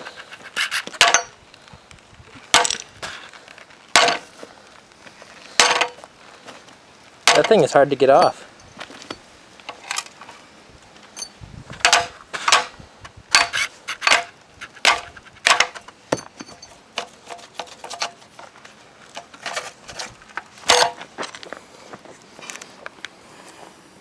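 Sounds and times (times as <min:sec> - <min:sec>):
metal parts clinking and knocking: 0:01.0 - 0:01.4, 0:11.1 - 0:12.7, 0:13.3 - 0:18.5, 0:19.2 - 0:21.0.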